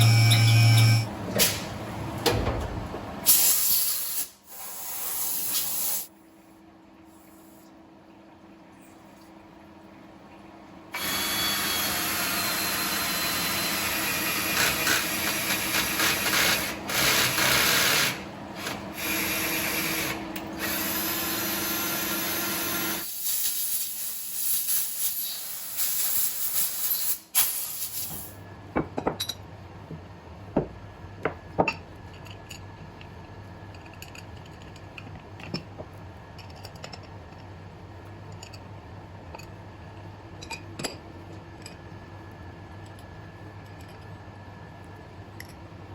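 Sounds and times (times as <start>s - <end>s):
machine tool hissing and humming: 3.3s - 6.1s.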